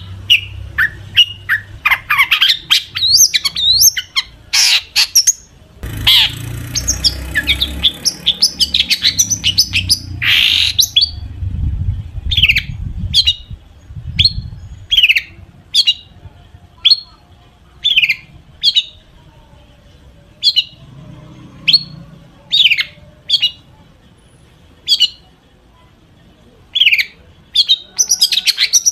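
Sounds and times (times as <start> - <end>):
bird chattering song: 0.0 - 11.3, 12.2 - 16.2, 16.8 - 17.2, 17.8 - 19.1, 20.4 - 20.9, 21.6 - 23.8, 24.8 - 25.3, 26.7 - 28.9.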